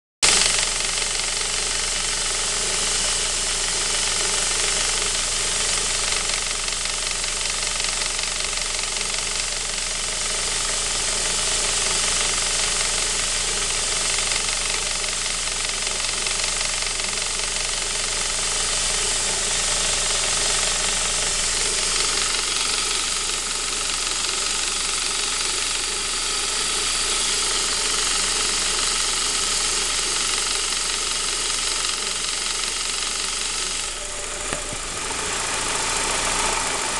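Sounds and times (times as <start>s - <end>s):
car engine running: 0.2s - 36.9s
strange engine noise: 10.3s - 36.9s.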